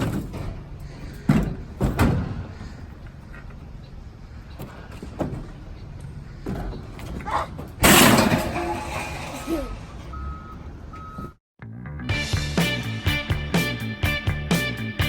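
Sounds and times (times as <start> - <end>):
truck: 0.0 - 15.0
reversing alarm beeping: 8.6 - 11.4.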